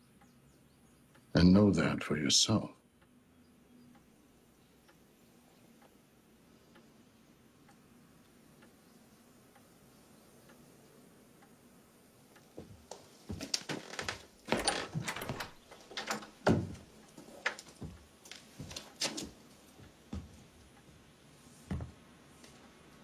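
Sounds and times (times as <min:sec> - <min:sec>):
knocks and clicks: 0:13.3 - 0:18.0.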